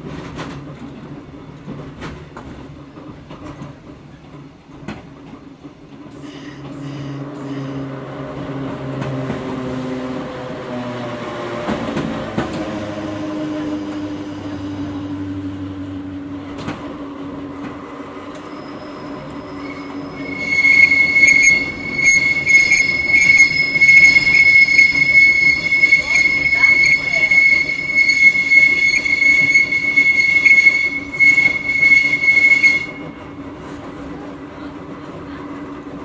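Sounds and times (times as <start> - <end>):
wheels squealing: 17.8 - 33.3
electric train motor drone: 19.6 - 33.0.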